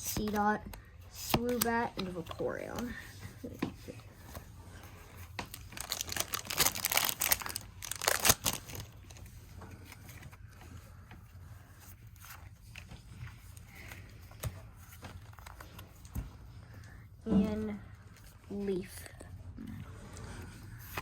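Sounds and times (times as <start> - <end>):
foil wrapper ripping: 5.5 - 9.2
foil wrapper crinkling: 5.5 - 9.3.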